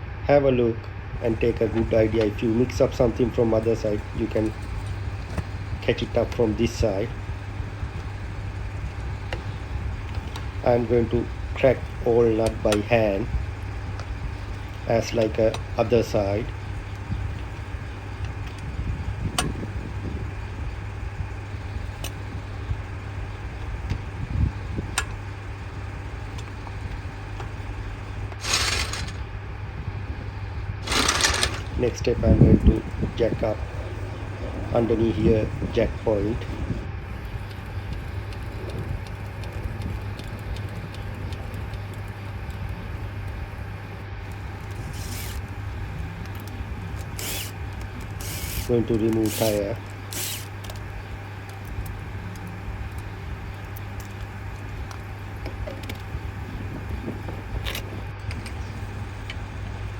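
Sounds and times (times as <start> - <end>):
steady low hum: 0.0 - 59.9
low rumble: 22.3 - 41.4
floor jack clicking and creaking: 28.3 - 29.2, 30.8 - 33.6.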